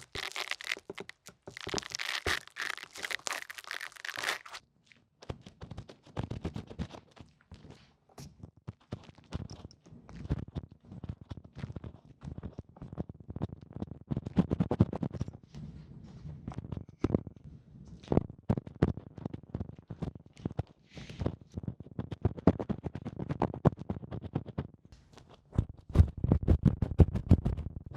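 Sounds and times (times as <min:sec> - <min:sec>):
crinkling: 0:00.0 - 0:04.6
scratching and crunching clicks: 0:00.0 - 0:04.6.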